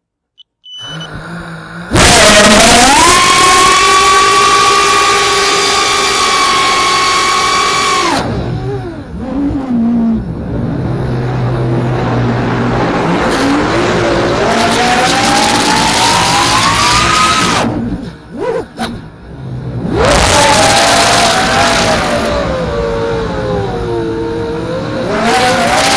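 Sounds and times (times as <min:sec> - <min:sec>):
drone motors whining: 0:00.6 - 0:18.8, 0:19.8 - 0:25.9.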